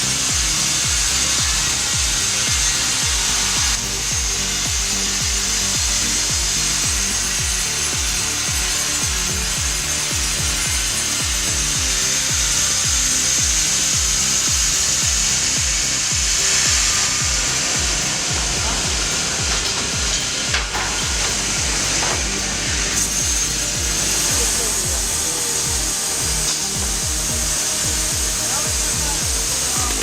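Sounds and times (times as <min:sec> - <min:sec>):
music with thudding beat: 0:00.0 - 0:30.0
power saw cutting wood: 0:00.0 - 0:30.0.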